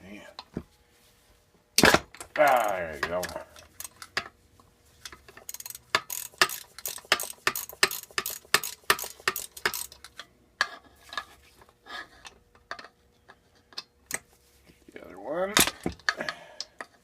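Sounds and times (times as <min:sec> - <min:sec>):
ratchet clicking: 0:05.1 - 0:10.2.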